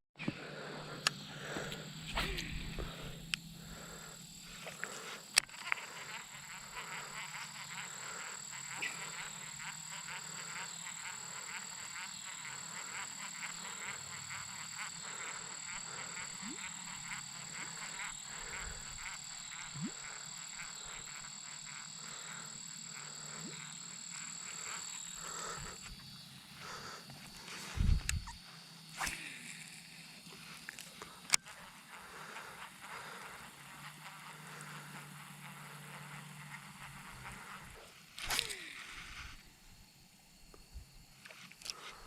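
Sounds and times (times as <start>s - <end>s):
steady high-pitched whine: 0.2s - 42.0s
sharp click: 38.2s - 38.7s.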